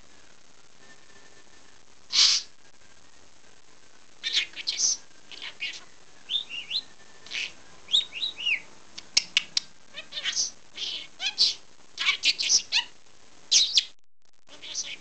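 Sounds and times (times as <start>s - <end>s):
budgerigar chirping and warbling: 2.1s - 2.5s, 4.2s - 13.9s, 14.5s - 15.0s.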